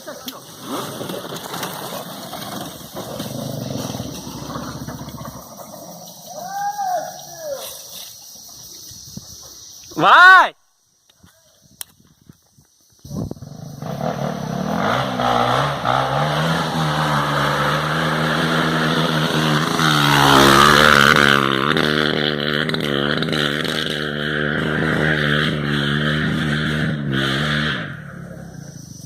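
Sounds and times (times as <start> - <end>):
motorcycle engine revving: 0.4 - 6.4, 13.1 - 29.0.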